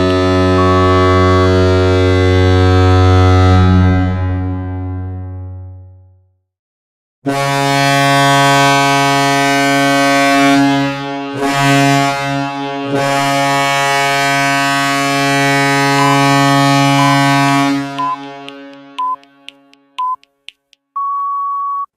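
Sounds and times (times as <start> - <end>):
goal horn blaring: 0.0 - 3.5, 7.3 - 19.7.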